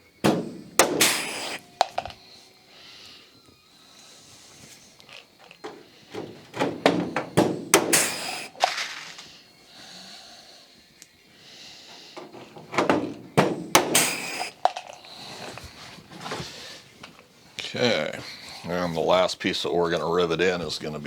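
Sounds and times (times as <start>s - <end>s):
rivet gun hiss: 0.0s - 3.2s, 7.1s - 10.1s, 13.2s - 15.7s
rivet gun snapping: 0.2s - 2.2s, 7.4s - 9.3s, 13.4s - 15.0s.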